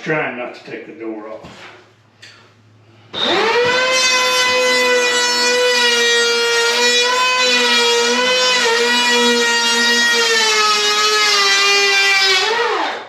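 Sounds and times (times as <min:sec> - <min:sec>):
electric hand planer cutting wood: 0:03.2 - 0:13.0.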